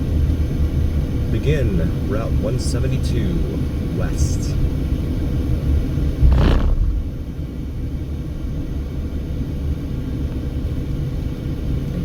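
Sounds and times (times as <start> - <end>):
car road and engine rumble: 0.0 - 12.0
passing whoosh: 6.2 - 7.2.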